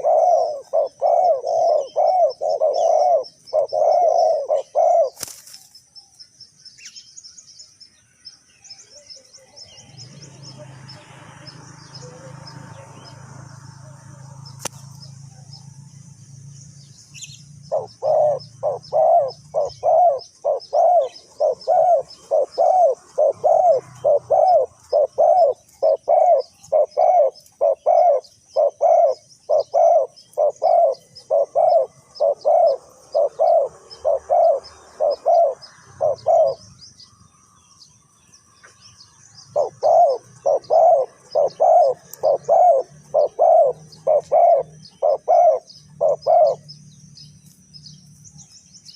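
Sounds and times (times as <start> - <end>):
dove cooing: 0.0 - 5.3, 17.2 - 36.8, 39.5 - 46.7
faint high-pitched chirping: 0.0 - 48.9.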